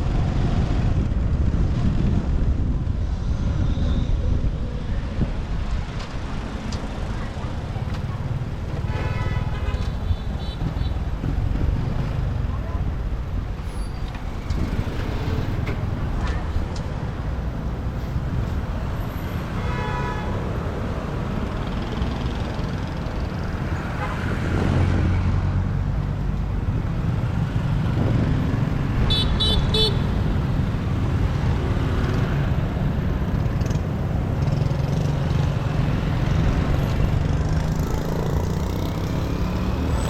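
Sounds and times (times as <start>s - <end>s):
street traffic rumble: 0.0s - 40.0s.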